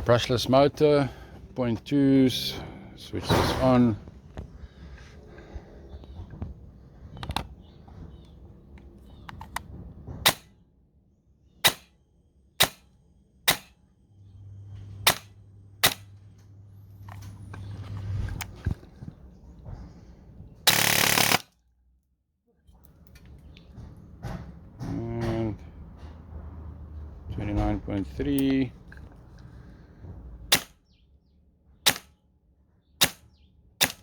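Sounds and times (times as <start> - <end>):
airsoft rifle single shots: 11.6 - 11.9, 12.6 - 12.8, 13.5 - 13.7, 15.1 - 16.1, 31.9 - 32.1, 33.0 - 33.2, 33.8 - 34.0
airsoft rifle full-auto burst: 20.7 - 21.5.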